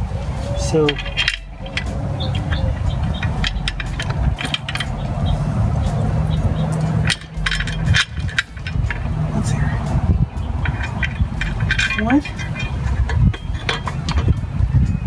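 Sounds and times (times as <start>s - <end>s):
steady low hum: 0.0s - 15.0s
metal tools clinking: 0.6s - 15.0s.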